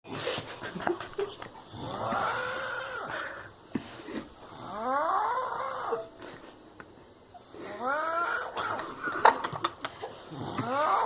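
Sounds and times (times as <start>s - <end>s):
person snoring heavily: 1.7s - 3.4s, 4.5s - 6.0s, 10.2s - 11.0s.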